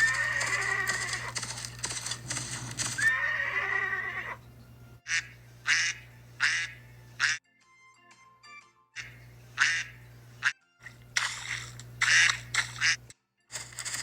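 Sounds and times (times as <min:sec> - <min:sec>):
horse whinnying: 0:00.0 - 0:01.4, 0:03.0 - 0:04.4.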